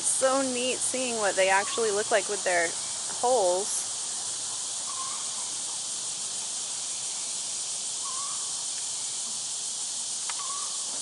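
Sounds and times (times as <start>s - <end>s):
insects chorus: 0.0s - 11.0s
faint warbling call: 8.0s - 8.5s, 10.4s - 10.8s.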